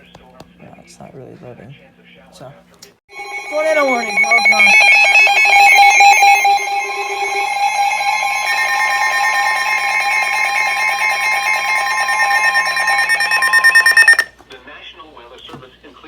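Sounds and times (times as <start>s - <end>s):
long steady warning tone: 3.1s - 14.3s
rapid pulsing alarm beeps: 3.1s - 14.3s.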